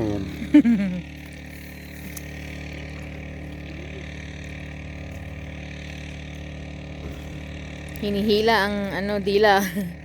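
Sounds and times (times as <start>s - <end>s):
engine humming steadily: 0.0s - 10.0s.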